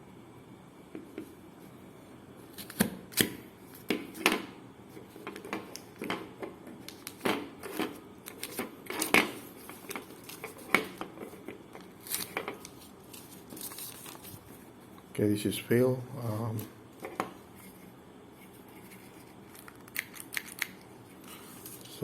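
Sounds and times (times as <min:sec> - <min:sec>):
paper rustling: 0:06.9 - 0:14.6.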